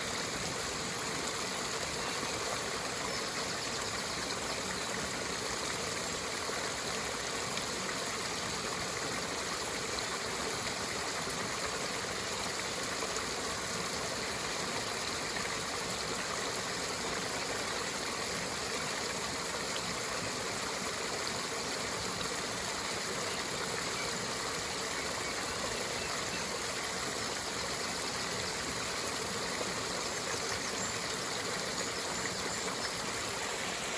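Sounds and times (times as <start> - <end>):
river water rushing: 27.1 - 33.9.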